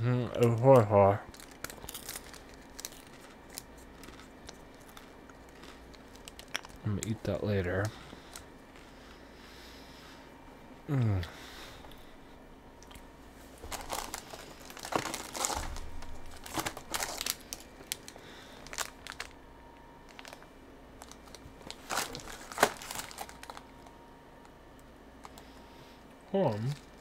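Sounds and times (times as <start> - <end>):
snack packaging crinkling: 0.3 - 9.0, 13.6 - 19.4, 20.0 - 24.6, 25.2 - 25.6, 26.5 - 27.0.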